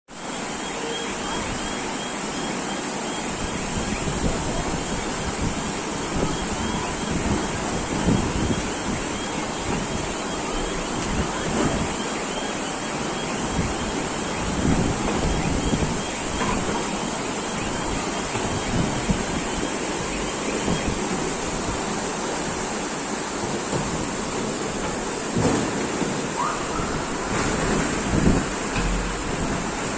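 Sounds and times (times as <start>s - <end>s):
floodwater rushing: 0.2s - 29.9s
wind buffeting microphone: 3.5s - 12.0s, 13.4s - 22.7s, 26.7s - 29.9s.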